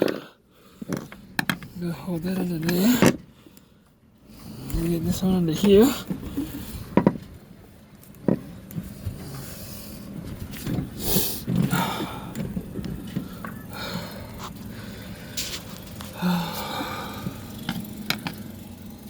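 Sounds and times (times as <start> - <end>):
heavy breathing: 11.0 - 12.5, 13.7 - 17.7.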